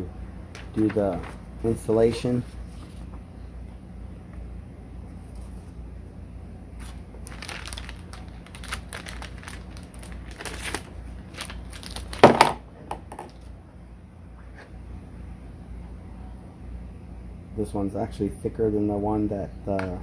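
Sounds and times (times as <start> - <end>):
packaging crinkling and rustling: 6.8 - 12.6
packaging crunch: 6.8 - 12.6.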